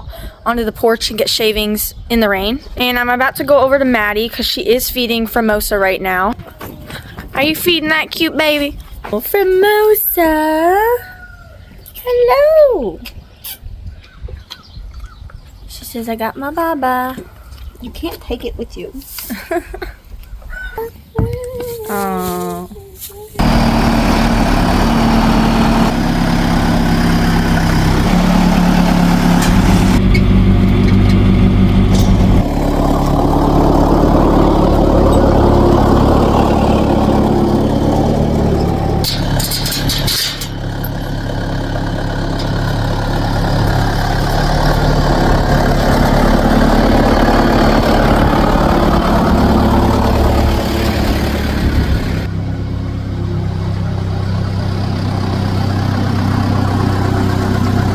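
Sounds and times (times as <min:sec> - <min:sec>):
vehicle engine running: 0:23.4 - 0:57.9.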